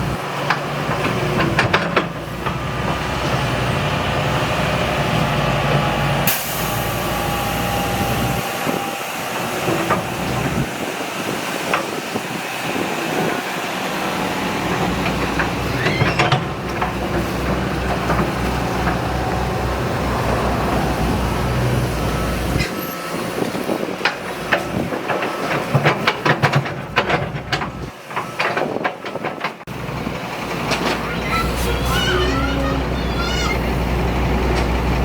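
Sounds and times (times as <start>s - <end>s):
heavy diesel machinery running: 0.0s - 35.0s
metallic clanks and knocks: 24.0s - 29.7s.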